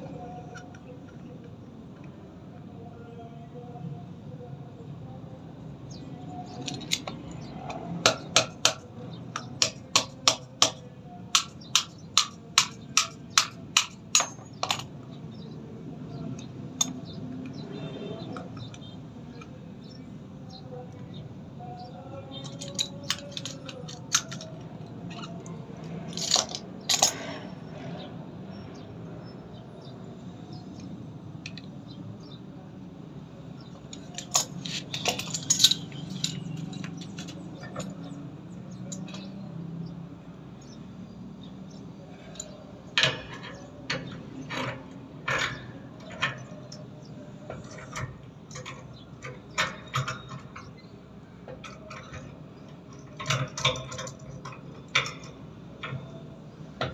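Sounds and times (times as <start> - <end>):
hand tools clinking and tapping: 6.5 - 15.0, 22.4 - 27.3, 33.8 - 38.2, 38.8 - 39.4, 42.2 - 50.8, 53.0 - 56.2.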